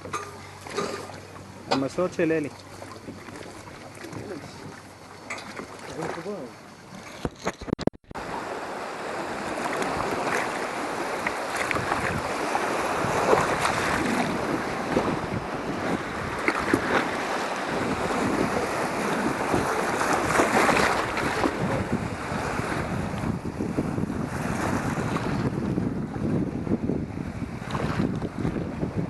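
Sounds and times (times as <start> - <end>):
sea water splashing and lapping: 0.0 - 29.0
wind buffeting microphone: 6.9 - 29.0.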